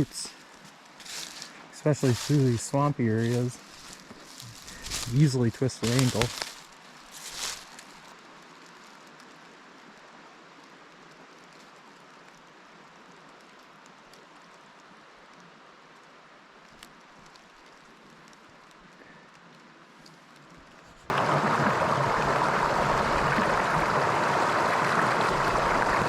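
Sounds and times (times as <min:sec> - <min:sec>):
stream running water: 0:00.0 - 0:10.5, 0:21.1 - 0:26.0
faint ticks: 0:10.5 - 0:20.9.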